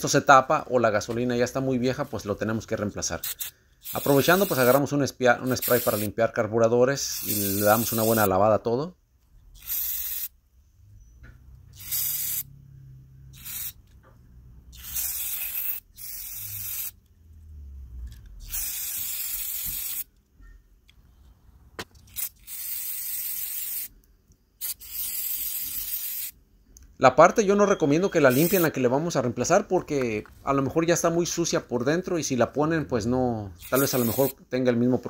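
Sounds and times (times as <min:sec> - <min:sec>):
aerosol spray hissing: 0:03.2 - 0:04.8, 0:05.5 - 0:06.2, 0:07.0 - 0:08.3, 0:09.6 - 0:10.3, 0:11.8 - 0:12.5, 0:13.4 - 0:13.8, 0:14.8 - 0:17.0, 0:18.5 - 0:20.1, 0:22.1 - 0:23.9, 0:24.6 - 0:26.4, 0:28.3 - 0:28.8, 0:33.6 - 0:34.4.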